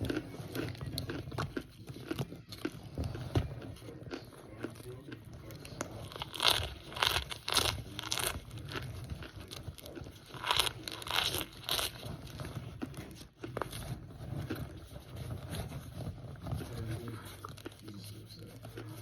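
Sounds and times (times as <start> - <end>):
soft crackling: 0.0 - 19.0
dry crunching bites: 3.8 - 13.8.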